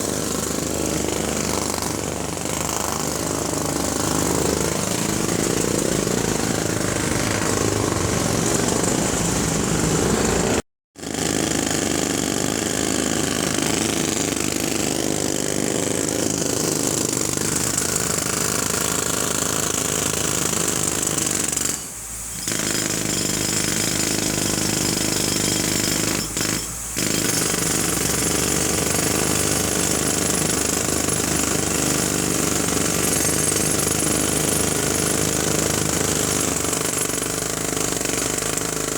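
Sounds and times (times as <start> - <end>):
jackhammer hammering: 0.0 - 38.9.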